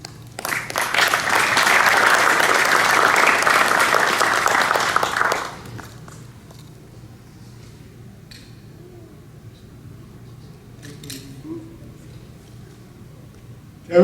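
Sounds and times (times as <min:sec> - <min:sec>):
audience applauding: 0:00.0 - 0:06.4.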